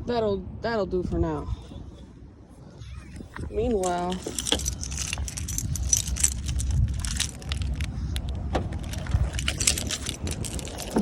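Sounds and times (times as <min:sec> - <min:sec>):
rustling: 0:03.5 - 0:11.0
metal buckles clinking: 0:03.7 - 0:11.0.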